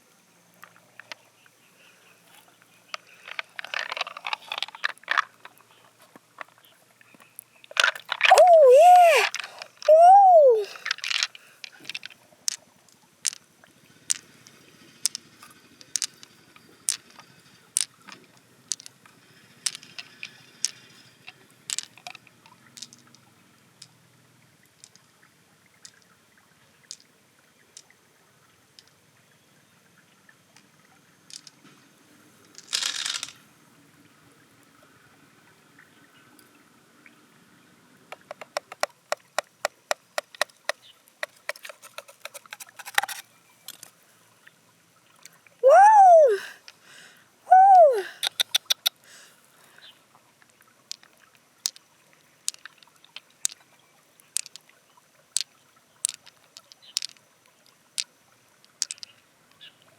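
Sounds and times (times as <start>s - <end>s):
hard objects knocking together: 38.2s - 43.2s.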